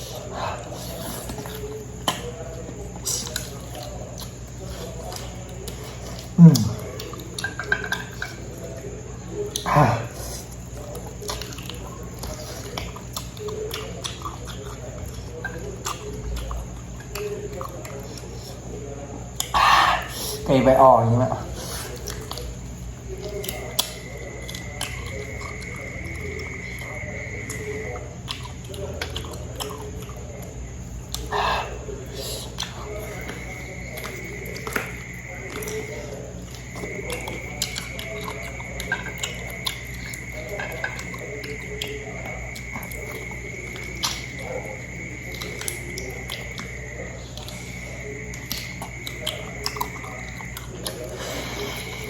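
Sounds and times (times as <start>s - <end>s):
person chewing food: 0.0s - 52.0s
steady low hum: 0.0s - 52.0s.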